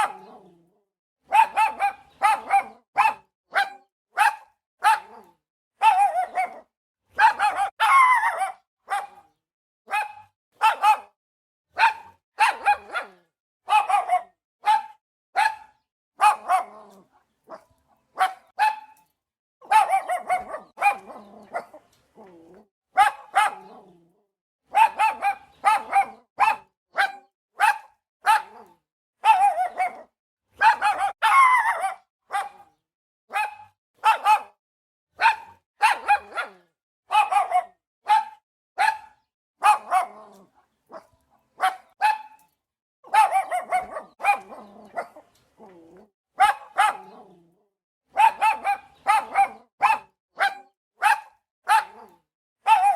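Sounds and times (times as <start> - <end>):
dog barking: 0.0 - 0.6, 1.2 - 19.0, 19.6 - 22.4, 23.0 - 24.0, 24.7 - 34.6, 35.2 - 45.3, 46.4 - 47.4, 48.1 - 52.9.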